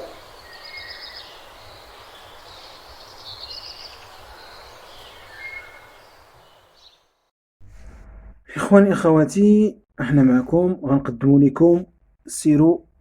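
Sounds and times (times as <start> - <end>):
birds chirping and twittering: 0.0 - 7.3.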